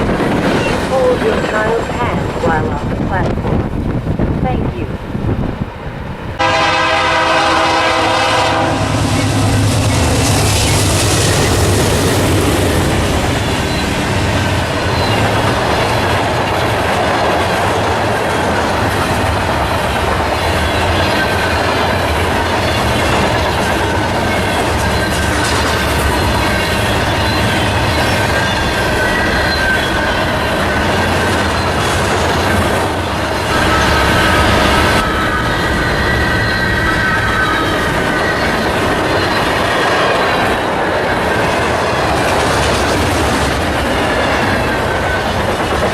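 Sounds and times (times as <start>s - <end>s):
freight train wheels rumbling: 0.0s - 45.9s
high wheel squeal: 13.4s - 14.1s, 24.3s - 32.0s, 33.0s - 39.8s.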